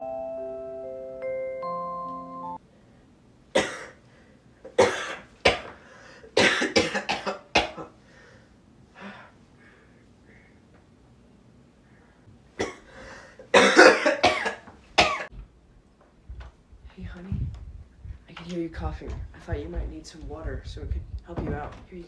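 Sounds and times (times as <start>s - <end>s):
person coughing: 3.6s - 4.0s, 4.7s - 7.9s, 12.6s - 15.3s.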